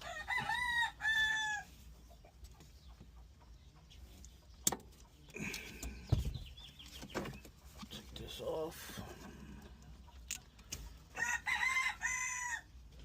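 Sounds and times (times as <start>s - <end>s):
rooster crowing: 0.0s - 1.7s, 11.1s - 12.7s.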